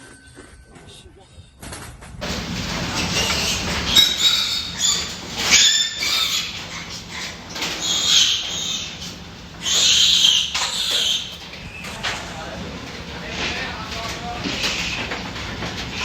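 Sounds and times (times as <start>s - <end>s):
pigs squealing: 2.6s - 12.1s.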